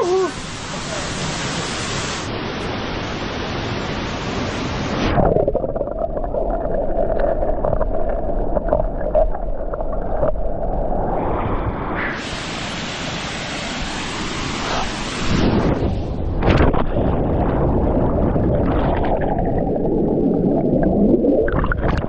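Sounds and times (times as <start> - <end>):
waterfall rushing: 0.0 - 4.9.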